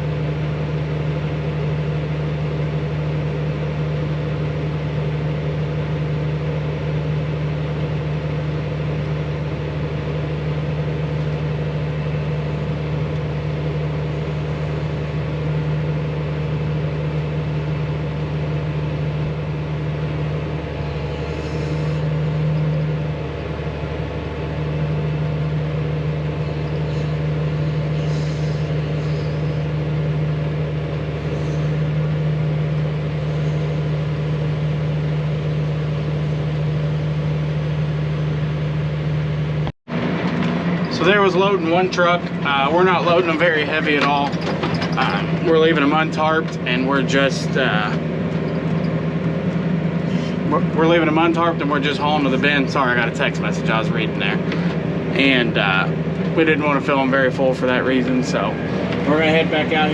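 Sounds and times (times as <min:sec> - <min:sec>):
diesel engine drone: 0:00.0 - 0:59.9.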